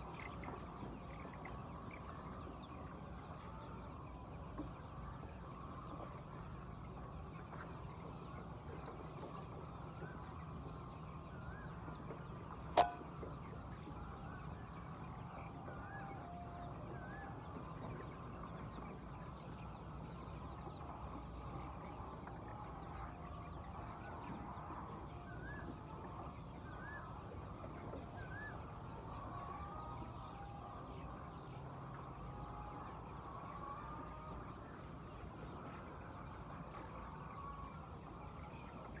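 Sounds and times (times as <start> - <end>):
short high chirps: 12.8 - 13.0
hens clucking: 28.9 - 38.9.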